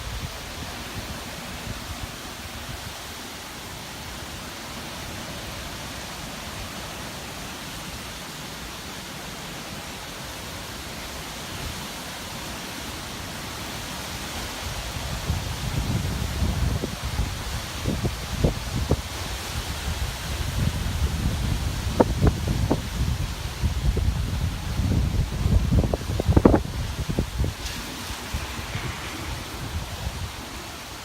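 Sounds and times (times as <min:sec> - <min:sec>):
wind buffeting microphone: 0:00.0 - 0:03.1, 0:14.6 - 0:31.0
strong wind rushing: 0:14.6 - 0:31.0.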